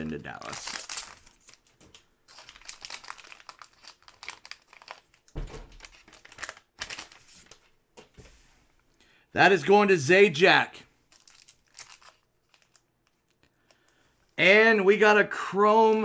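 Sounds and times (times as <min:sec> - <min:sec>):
crinkling card pack wrappers: 0:00.0 - 0:08.1, 0:11.0 - 0:14.4.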